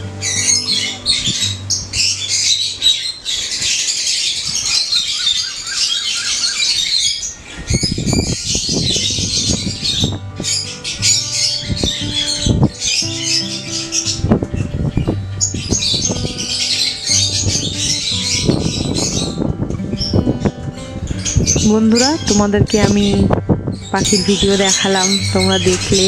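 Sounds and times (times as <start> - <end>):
lovebirds chattering and squawking: 0.0 - 26.0
low rustling thumps: 14.0 - 26.0.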